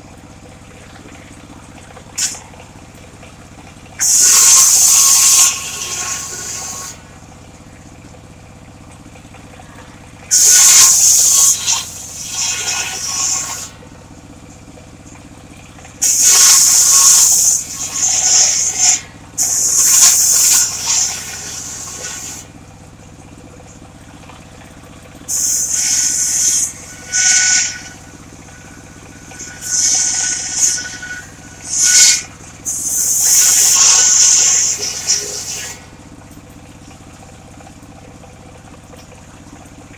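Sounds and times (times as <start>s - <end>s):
saw engine running: 0.3s - 39.5s
circular saw cutting wood: 4.0s - 7.1s, 10.3s - 13.8s, 16.0s - 22.5s, 25.3s - 35.9s.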